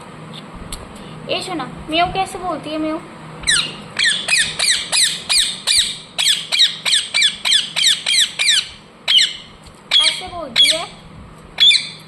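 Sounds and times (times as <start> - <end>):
parrot squawking chirps: 3.4 - 11.0, 11.6 - 12.0.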